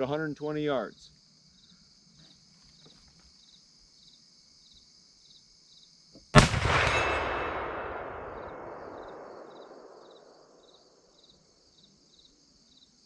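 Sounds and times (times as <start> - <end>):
crickets chirping: 0.0 - 13.0
gunshot with echo: 6.4 - 10.3.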